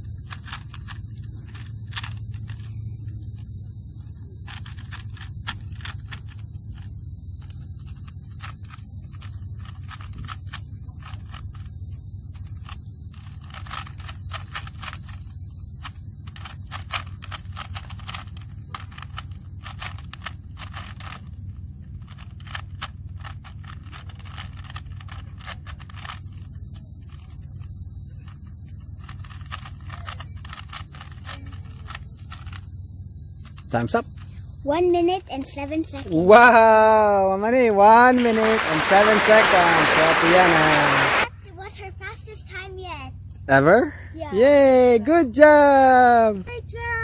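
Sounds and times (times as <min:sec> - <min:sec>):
steady low hum: 0:00.0 - 0:45.4
plastic cube clicks and clacks: 0:00.3 - 0:02.7, 0:04.4 - 0:11.7, 0:12.3 - 0:21.3, 0:22.0 - 0:26.4, 0:29.0 - 0:32.7
high hiss: 0:36.0 - 0:41.3.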